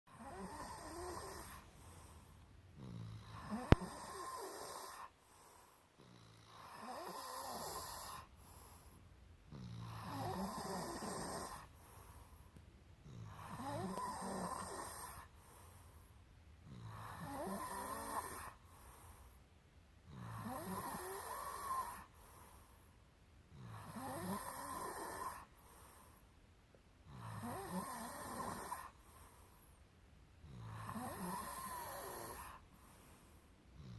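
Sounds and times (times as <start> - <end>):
person snoring: 0.1 - 1.7, 2.8 - 5.1, 6.0 - 8.3, 9.5 - 11.7, 13.0 - 15.3, 16.6 - 18.6, 20.1 - 22.1, 27.1 - 29.0, 30.5 - 32.6
quiet breathing: 0.1 - 33.9.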